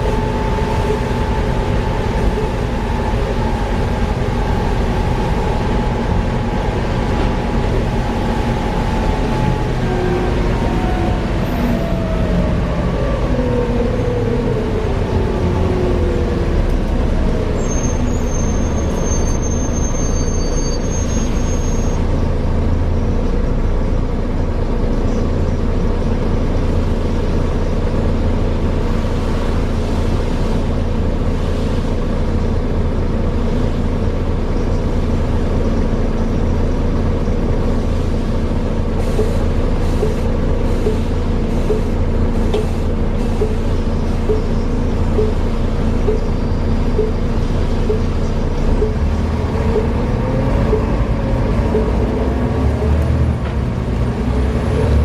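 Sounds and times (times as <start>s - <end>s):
bus diesel engine drone: 0.0s - 55.0s
brief high squeal: 17.6s - 22.0s.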